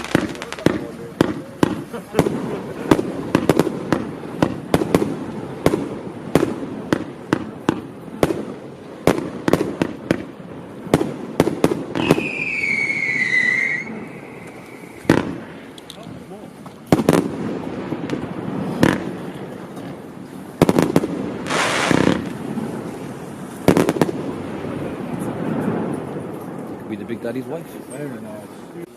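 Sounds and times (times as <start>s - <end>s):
firework shots and bangs: 0.0s - 16.0s, 16.8s - 27.1s
firework whistle: 11.8s - 15.5s.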